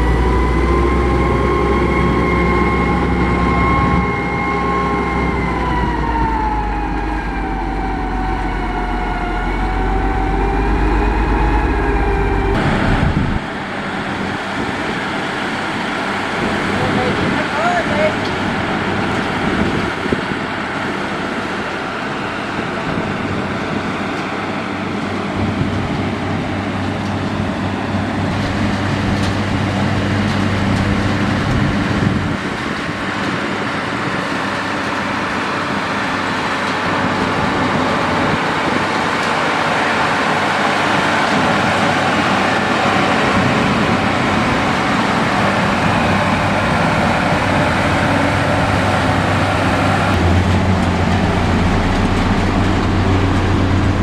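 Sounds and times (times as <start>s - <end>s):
construction machinery engine drone: 0.0s - 54.0s.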